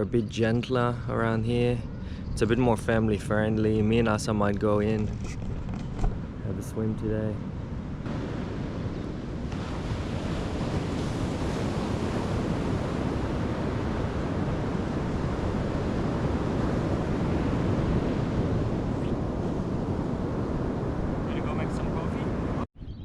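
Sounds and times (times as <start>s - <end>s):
wind rumbling on microphone: 0.0s - 23.0s
gentle surf on a beach: 8.1s - 22.7s.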